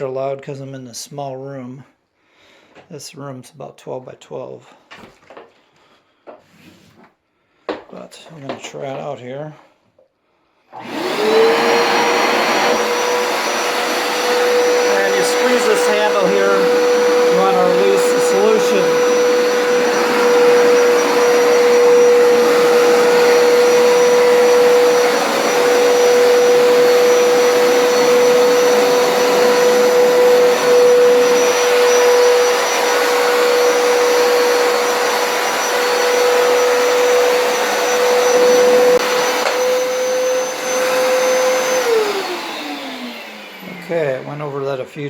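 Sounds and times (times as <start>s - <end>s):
carpet cleaner motor whine: 10.7s - 44.7s
suction rushing: 11.0s - 36.3s.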